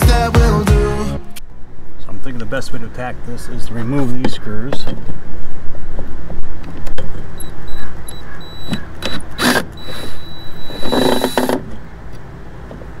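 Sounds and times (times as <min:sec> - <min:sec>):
cordless drill motor whining: 0:07.4 - 0:11.7.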